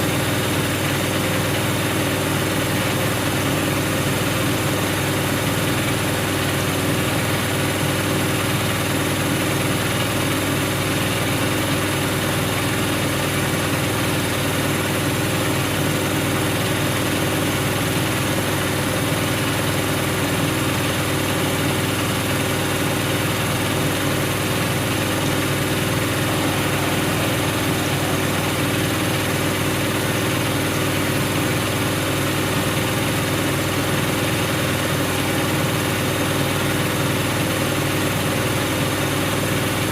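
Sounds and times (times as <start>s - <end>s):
washing machine motor hum: 21.8s - 35.8s.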